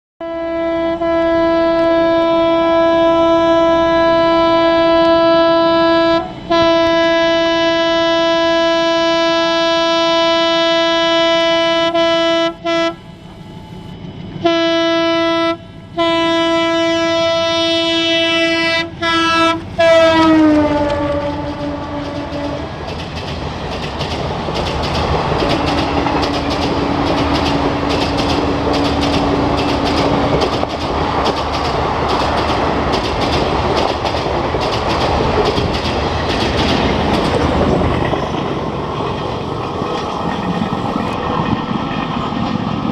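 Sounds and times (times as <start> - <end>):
locomotive air horn blasts: 0.2 - 13.8, 14.4 - 22.7, 25.5 - 30.2
train wheels clattering over rails: 20.4 - 42.9.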